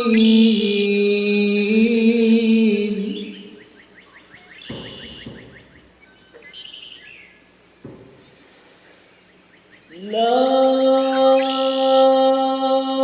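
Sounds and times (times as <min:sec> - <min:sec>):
birds chirping: 0:00.0 - 0:12.6
soft low thump: 0:04.7 - 0:05.9.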